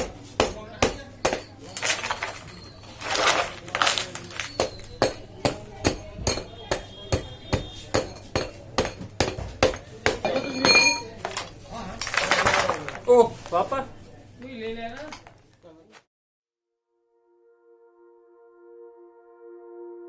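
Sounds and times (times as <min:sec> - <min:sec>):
hammer blows: 0:04.4 - 0:10.2.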